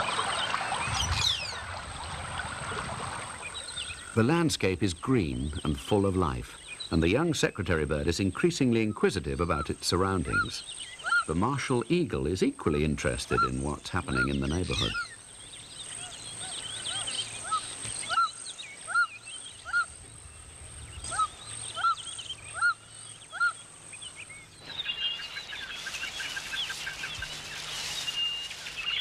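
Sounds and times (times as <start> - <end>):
chorus of chirping birds: 0.0 - 29.0
thin steady high whine: 24.4 - 29.0.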